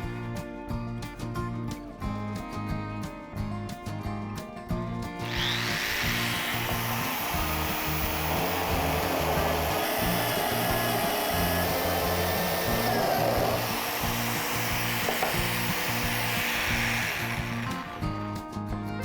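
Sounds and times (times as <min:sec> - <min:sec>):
background music with bass line: 0:00.0 - 0:19.0
power tool working wood: 0:05.2 - 0:18.2.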